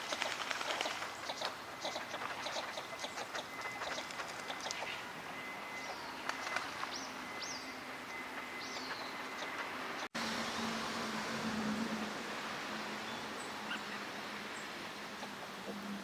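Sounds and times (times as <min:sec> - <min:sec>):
small birds chirping: 0:05.7 - 0:10.7.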